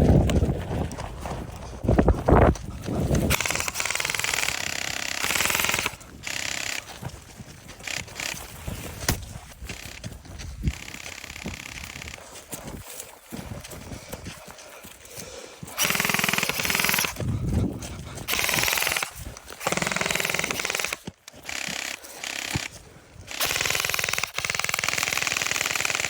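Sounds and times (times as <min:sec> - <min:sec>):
airsoft rifle firing bursts: 0:03.3 - 0:06.9, 0:07.8 - 0:08.6, 0:10.7 - 0:12.2, 0:15.7 - 0:17.2, 0:18.3 - 0:26.0.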